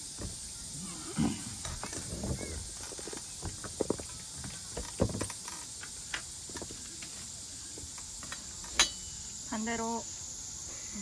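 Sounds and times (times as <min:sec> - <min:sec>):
steady high hiss: 0:00.0 - 0:11.0
camping gear knocks and clicks: 0:01.2 - 0:07.1.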